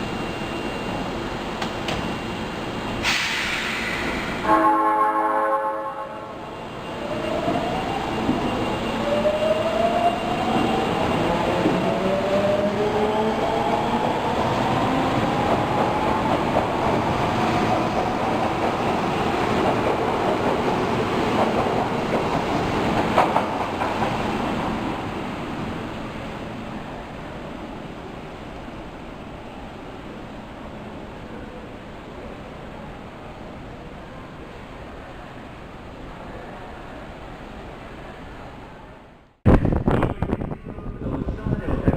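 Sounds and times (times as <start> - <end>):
train running noise: 0.0 - 26.9
subway train motors whining: 0.0 - 41.9.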